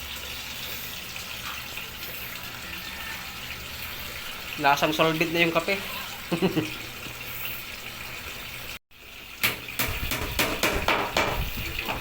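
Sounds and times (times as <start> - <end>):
running water: 0.0 - 12.0
sharp knocks and clicks: 9.4 - 12.0.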